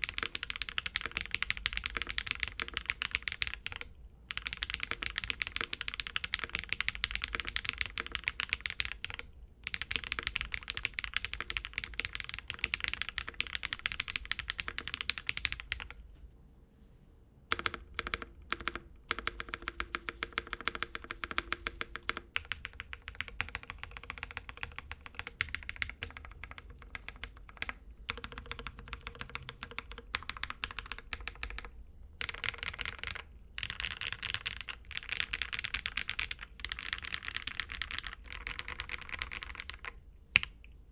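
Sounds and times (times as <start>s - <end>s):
mechanical keyboard typing: 0.0s - 16.0s, 17.5s - 40.6s.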